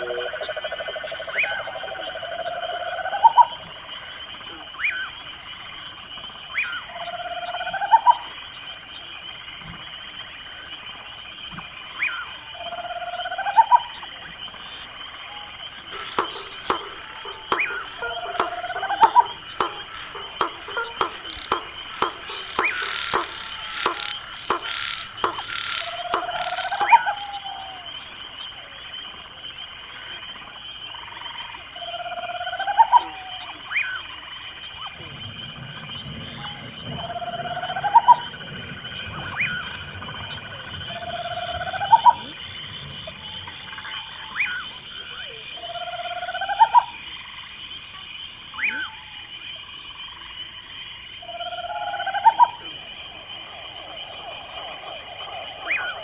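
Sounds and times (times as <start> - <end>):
crickets trilling: 0.0 - 56.0
rapid clicks: 15.9 - 26.8.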